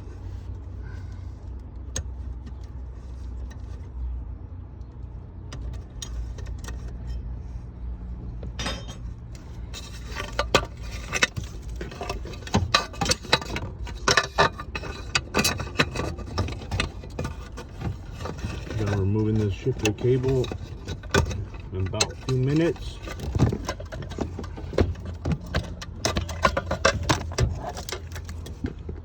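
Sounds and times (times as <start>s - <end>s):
low steady hum: 0.0s - 29.0s
metal tools clinking: 8.5s - 28.6s.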